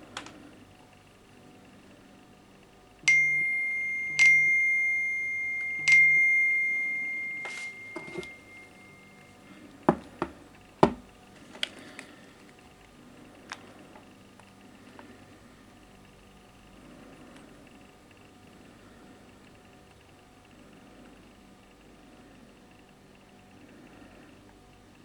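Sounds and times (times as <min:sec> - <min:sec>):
phone chime dings: 0:03.1 - 0:11.0.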